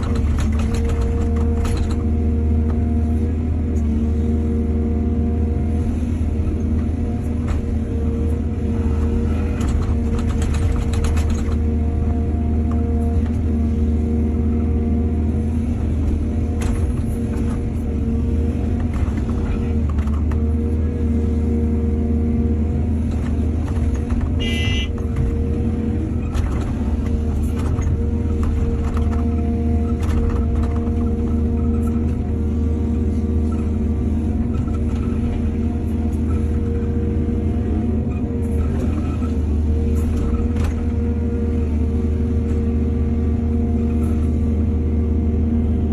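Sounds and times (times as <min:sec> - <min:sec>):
machine knocks and clanks: 0:00.0 - 0:02.1
diesel engine running: 0:00.0 - 0:45.9.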